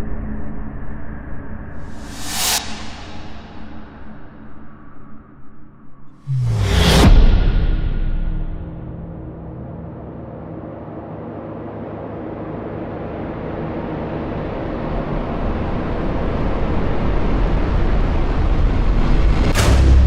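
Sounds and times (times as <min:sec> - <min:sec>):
impact hit: 0:01.8 - 0:05.2, 0:06.2 - 0:10.8, 0:19.5 - 0:20.0
reversed rumble: 0:01.9 - 0:05.2.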